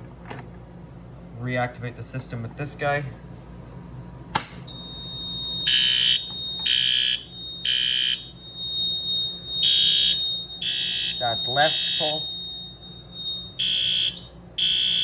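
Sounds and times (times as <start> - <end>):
fire alarm pull station click: 4.3 - 15.0
fire alarm horns blasting: 4.7 - 15.0
steady high tone: 4.7 - 15.0.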